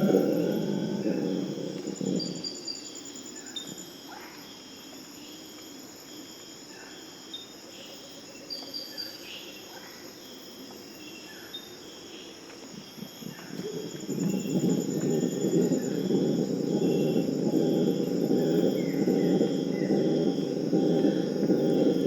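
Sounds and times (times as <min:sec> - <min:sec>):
howler monkeys howling: 0:00.0 - 0:02.8, 0:13.5 - 0:22.0
insects buzzing and pulsing: 0:00.0 - 0:22.0.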